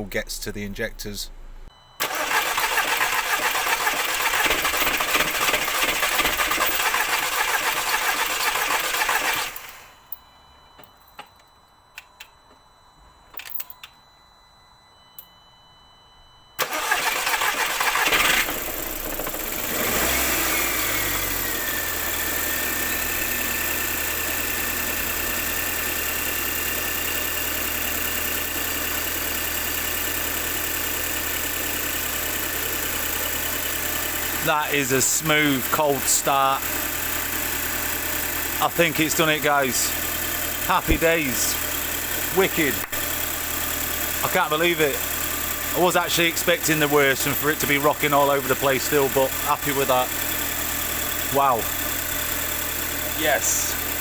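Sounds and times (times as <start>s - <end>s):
engine cranking on starter: 2.0s - 10.0s, 16.6s - 54.0s
engine starting and idling: 2.0s - 10.1s, 16.6s - 54.0s.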